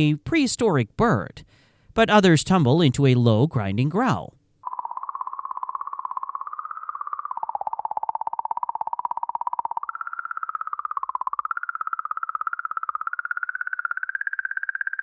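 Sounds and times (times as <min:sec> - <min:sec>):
warbling pulsing tone: 0:04.6 - 0:15.0.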